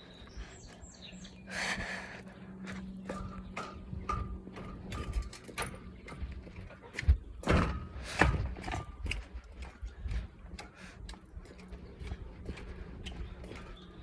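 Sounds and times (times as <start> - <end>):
irregular knocks and clicks: 2.7 - 14.0
loud thuds: 7.1 - 8.9.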